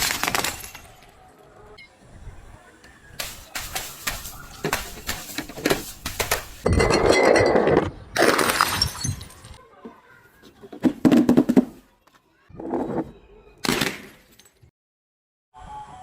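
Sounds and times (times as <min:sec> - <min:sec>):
crushing and breaking: 0:00.0 - 0:01.2.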